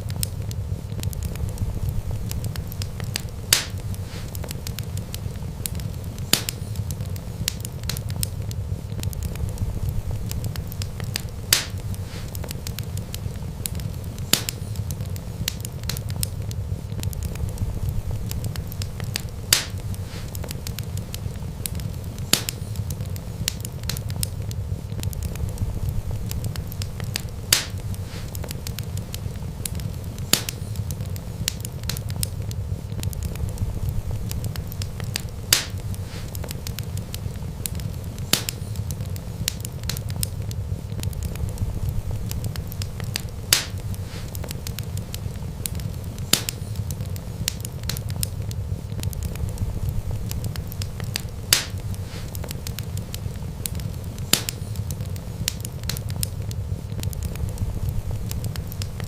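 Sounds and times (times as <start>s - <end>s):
fire popping: 0.0s - 59.0s
wood fire crackling: 0.0s - 59.0s.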